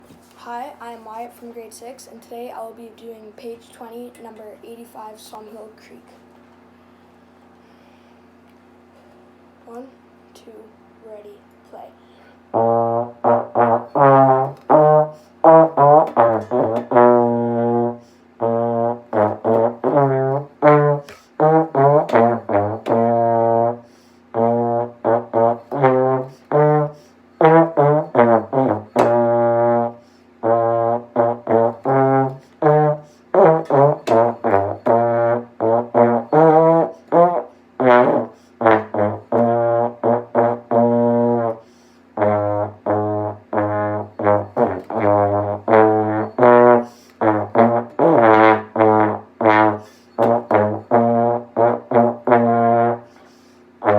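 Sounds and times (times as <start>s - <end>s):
brass instrument melody: 12.4s - 53.2s.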